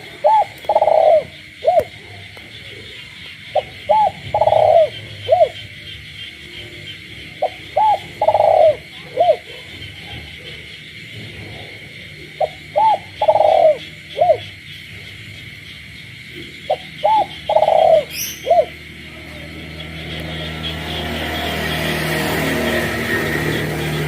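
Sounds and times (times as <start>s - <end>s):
dove cooing: 0.0s - 10.7s, 11.9s - 14.6s, 16.3s - 24.0s
chorus of frogs: 0.0s - 24.0s
low hum: 18.4s - 24.0s.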